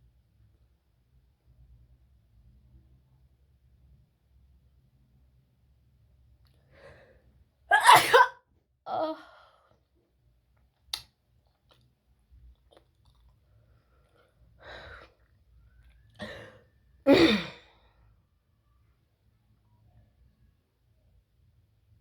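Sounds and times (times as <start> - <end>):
person sneezing: 7.7 - 8.4, 17.1 - 17.6.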